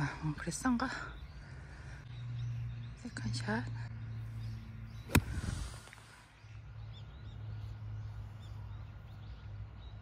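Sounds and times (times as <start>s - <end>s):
birds chirping faintly: 0.0s - 10.0s
golf club striking ball: 5.0s - 6.0s.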